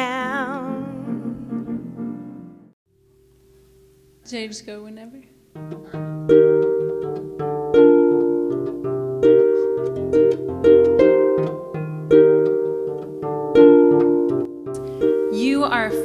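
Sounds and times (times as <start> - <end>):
harp-like plucked chords: 5.5 - 16.0.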